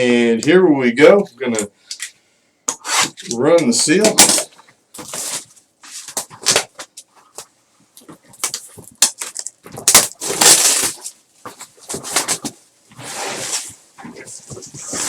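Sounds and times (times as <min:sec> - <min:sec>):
plastic shrink wrap tearing: 0:08.4 - 0:11.2.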